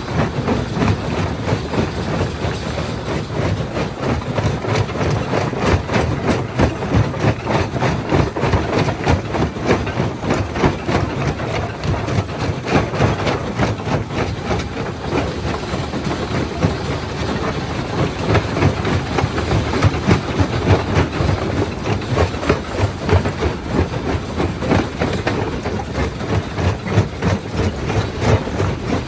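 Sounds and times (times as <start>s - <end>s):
rock crusher clattering: 0.0s - 29.0s.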